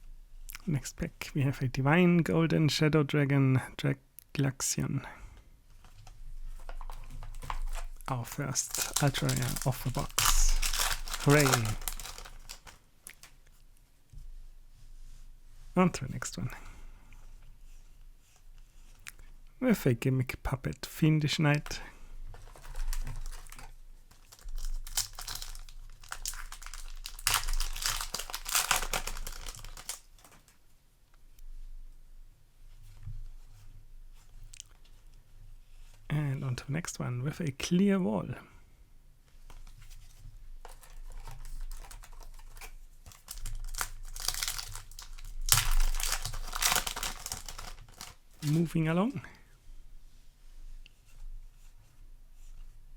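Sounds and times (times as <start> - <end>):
foil wrapper crinkling and tearing: 6.8 - 13.4, 22.4 - 30.5, 40.6 - 48.8.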